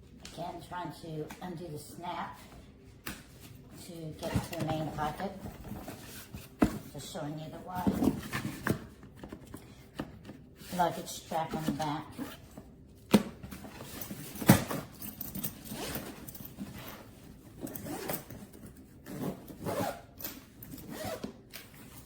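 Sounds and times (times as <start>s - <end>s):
suitcase zipper rasping open: 17.6s - 18.3s, 19.0s - 21.3s.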